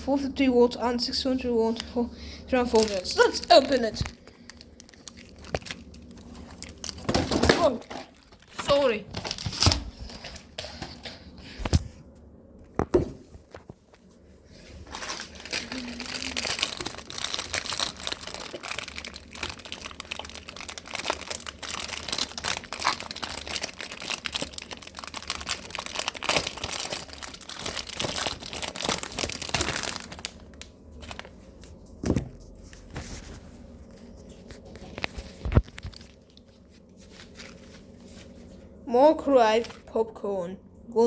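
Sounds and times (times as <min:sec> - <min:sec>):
packaging crinkling: 0:02.6 - 0:10.9, 0:14.8 - 0:31.8, 0:34.4 - 0:38.3.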